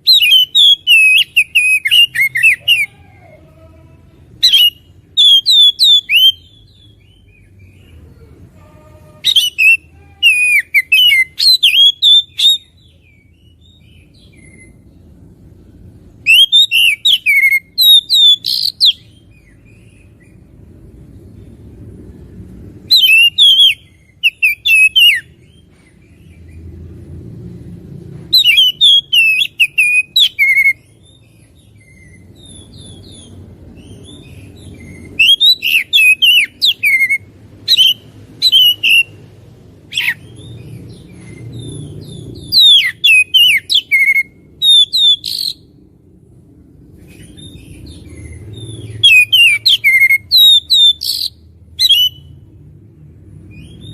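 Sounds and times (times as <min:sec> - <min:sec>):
bird singing whistles and chirps: 0:00.0 - 0:02.9, 0:04.4 - 0:07.8, 0:09.2 - 0:14.8, 0:16.2 - 0:20.4, 0:22.9 - 0:25.7, 0:28.3 - 0:39.2, 0:39.9 - 0:45.7, 0:47.0 - 0:52.4.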